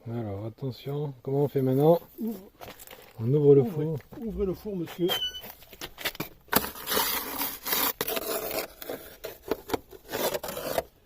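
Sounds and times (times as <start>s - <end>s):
short squeak: 5.0s - 5.6s.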